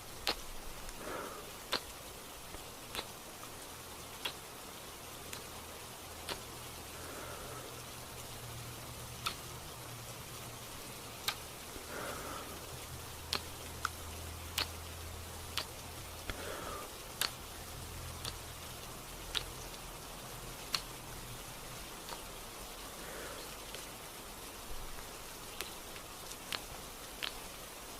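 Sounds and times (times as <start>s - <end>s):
gentle rain hiss: 0.0s - 27.9s
sharp single ticks: 0.2s - 1.9s, 4.2s - 4.4s, 5.3s - 5.5s, 6.2s - 6.5s, 9.2s - 9.5s, 11.2s - 12.4s, 13.3s - 17.4s, 18.1s - 18.6s, 19.3s - 19.9s, 20.6s - 21.0s, 25.6s - 27.4s.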